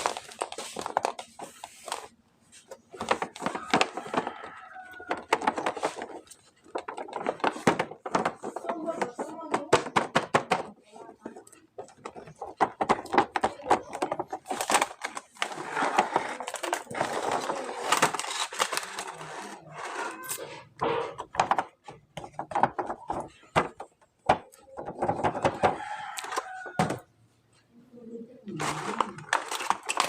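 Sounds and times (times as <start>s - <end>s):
crinkly packaging rustling: 0.0s - 9.9s, 11.2s - 20.4s, 28.5s - 30.0s
plastic pieces clicking and tapping: 2.9s - 19.2s, 21.2s - 27.1s, 28.6s - 30.0s.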